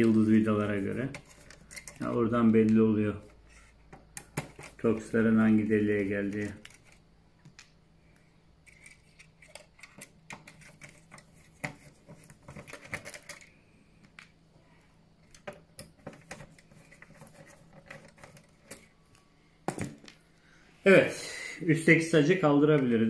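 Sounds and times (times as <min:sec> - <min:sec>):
screws and metal parts clicking: 0:01.1 - 0:02.2, 0:08.6 - 0:11.2.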